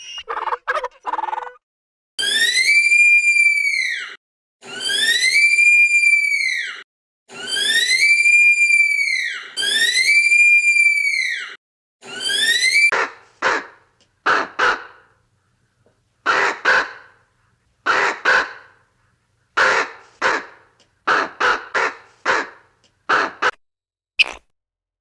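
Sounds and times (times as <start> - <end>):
animal harsh raspy calls: 0.0 - 1.6.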